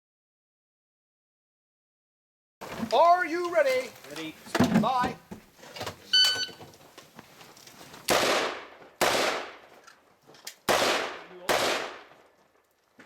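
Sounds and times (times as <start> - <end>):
gunshots with ringing echo: 8.1 - 9.6, 10.7 - 12.2.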